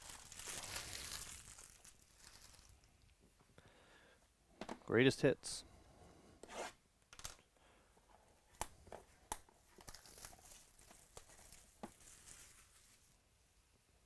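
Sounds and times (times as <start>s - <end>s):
card pack tearing and crinkling: 0.0s - 2.8s, 9.8s - 13.1s.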